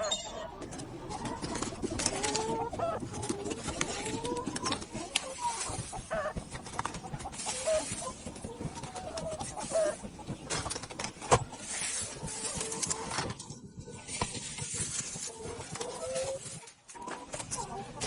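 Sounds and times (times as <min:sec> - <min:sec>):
hens clucking and calling: 0:00.0 - 0:18.0
sharp clicks and knocks: 0:08.2 - 0:11.6.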